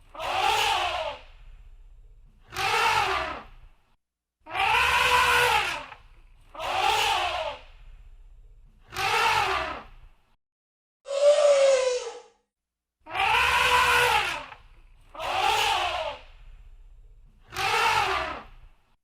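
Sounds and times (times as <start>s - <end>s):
elephant trumpeting: 4.5s - 5.9s, 13.1s - 14.5s.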